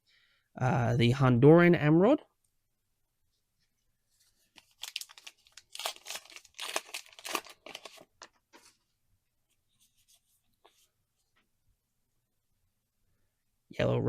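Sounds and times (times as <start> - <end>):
wrapper and cards crinkling: 4.4 - 8.8
wrapper tearing: 4.6 - 8.3.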